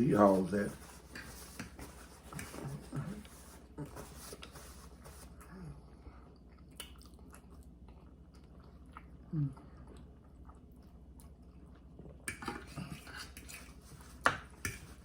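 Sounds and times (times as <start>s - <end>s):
person chewing meat: 6.2s - 12.9s.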